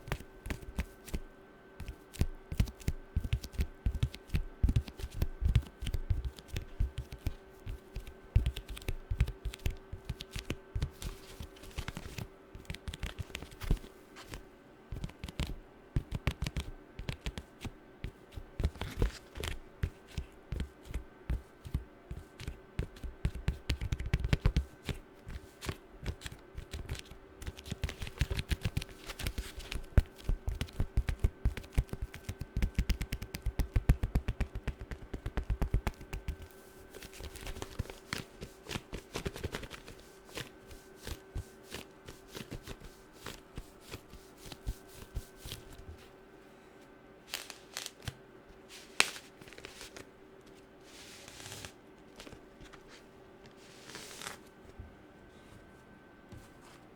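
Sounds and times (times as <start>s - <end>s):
faint steady hum: 0.0s - 56.9s.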